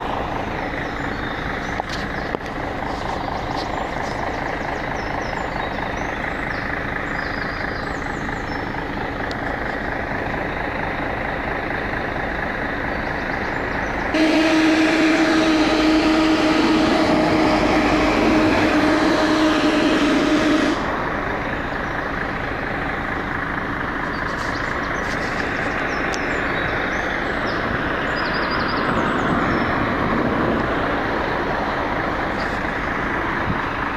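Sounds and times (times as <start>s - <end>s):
bus engine running: 0.0s - 33.9s
loud air hiss with droning hum: 14.2s - 21.4s.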